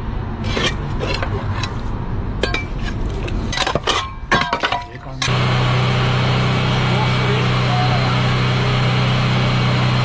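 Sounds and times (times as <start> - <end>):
clinks knocks and scrapes: 0.4 - 5.3.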